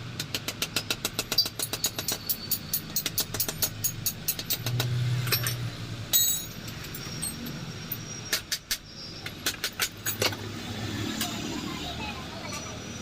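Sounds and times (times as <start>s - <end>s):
metal tools clinking: 1.3s - 8.2s, 9.5s - 10.4s
ringing metallic clank: 5.3s - 8.4s.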